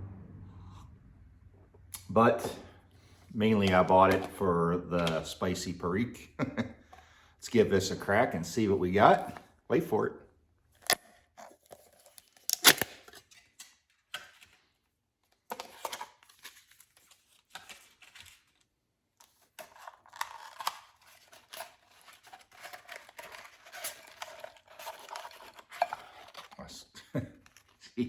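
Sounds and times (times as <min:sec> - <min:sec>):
paper packaging crinkling and tearing: 0:10.8 - 0:14.8, 0:15.4 - 0:28.0.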